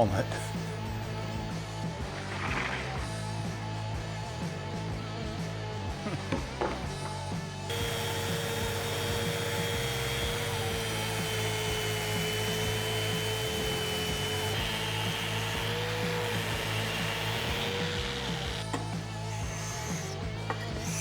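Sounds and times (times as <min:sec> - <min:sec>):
electric power tool whine: 0:07.7 - 0:21.0.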